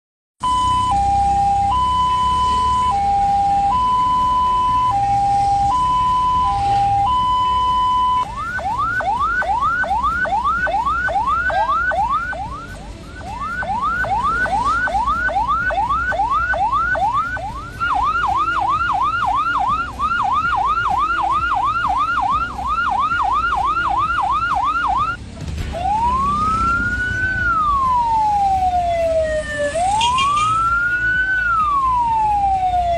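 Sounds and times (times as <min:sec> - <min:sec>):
electronic ambulance siren: 0:00.4 - 0:32.9.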